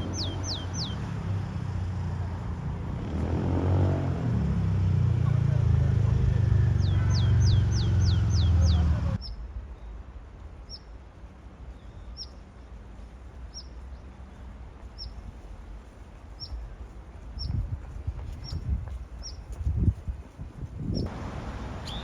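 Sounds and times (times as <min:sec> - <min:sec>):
small bird chirping: 0:00.0 - 0:01.1, 0:06.7 - 0:09.4, 0:21.8 - 0:22.0
low traffic rumble: 0:00.0 - 0:22.0.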